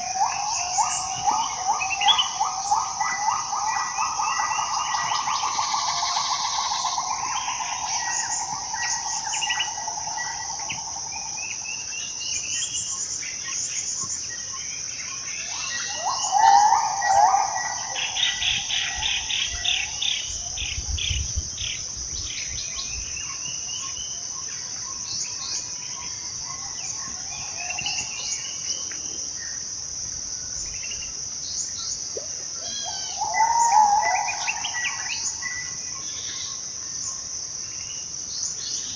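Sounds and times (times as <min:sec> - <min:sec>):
high-pitched insect drone: 0:00.0 - 0:13.8, 0:15.2 - 0:31.2
bird calls: 0:00.0 - 0:29.6, 0:30.5 - 0:38.9.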